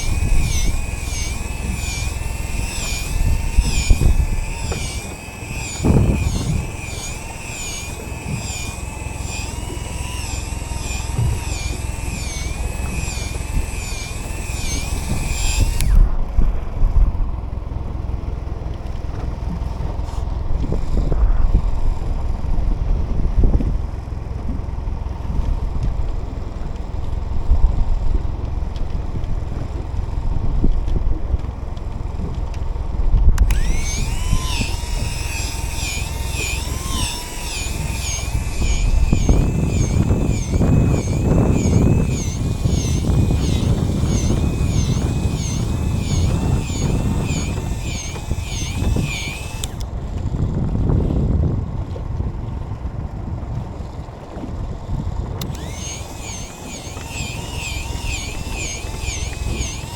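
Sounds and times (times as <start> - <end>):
boat noise: 0.0 - 16.2
small electric motor whining: 0.0 - 25.1, 33.3 - 50.0, 55.4 - 59.9
wind: 0.0 - 59.9.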